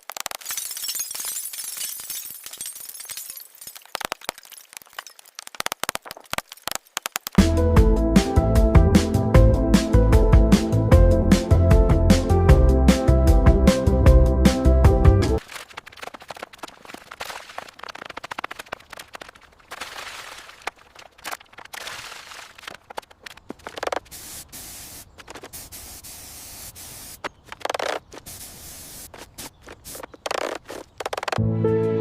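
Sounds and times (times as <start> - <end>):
scraping and scratching: 15.4 - 24.3, 27.1 - 31.4
hissing scrapes: 15.4 - 31.4.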